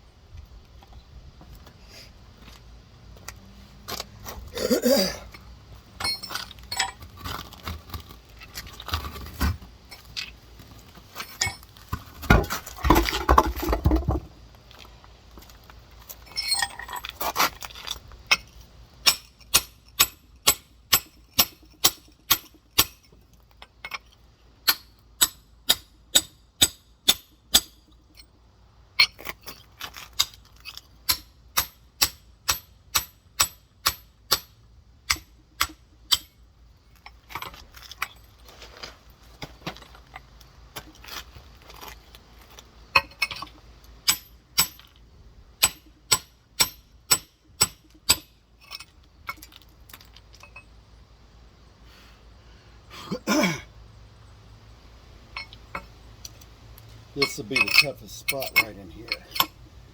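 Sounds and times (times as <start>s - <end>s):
rough scraping: 3.6s - 15.0s, 37.0s - 43.6s, 56.9s - 59.8s.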